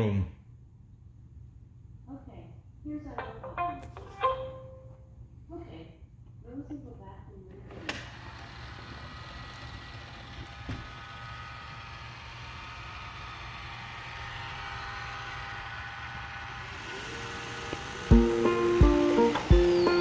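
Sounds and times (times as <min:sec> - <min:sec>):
acoustic guitar music: 0:03.2 - 0:05.0, 0:18.1 - 0:20.0
robot vacuum humming: 0:07.6 - 0:20.0.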